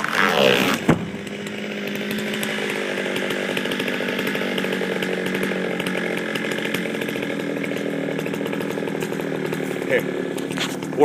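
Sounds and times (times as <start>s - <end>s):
chainsaw running: 0.0s - 11.0s
sharp loud thump: 0.7s - 1.2s.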